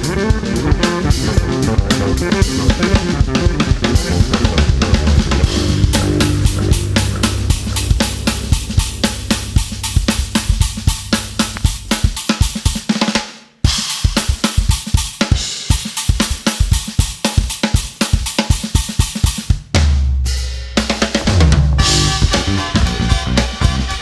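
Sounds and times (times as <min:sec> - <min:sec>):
electric bass: 0:00.0 - 0:12.9, 0:21.3 - 0:24.0
drum kit playing: 0:00.0 - 0:24.0.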